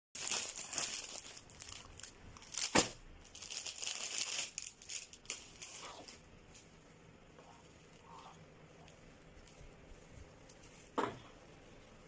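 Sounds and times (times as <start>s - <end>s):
packaging crinkling: 0.2s - 6.7s.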